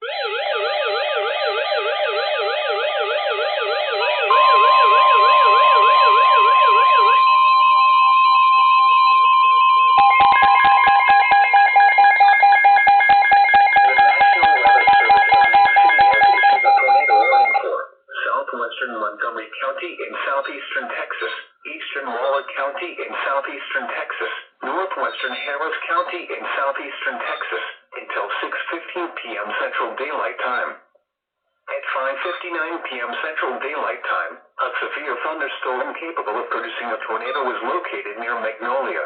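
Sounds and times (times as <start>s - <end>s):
warbling siren tone: 0.0s - 17.6s
steady high alert tone: 0.0s - 17.9s
rapid pulsing beeps: 10.0s - 17.6s.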